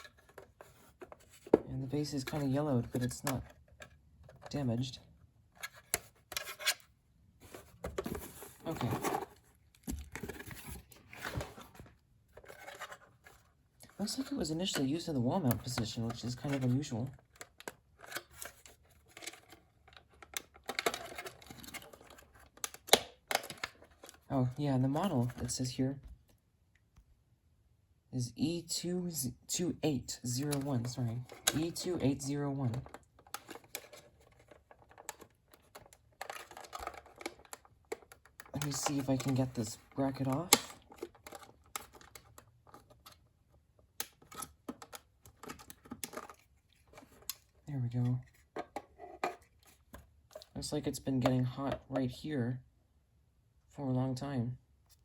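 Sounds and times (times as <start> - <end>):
rubbing and rustling: 0.0 - 4.6, 5.5 - 15.0.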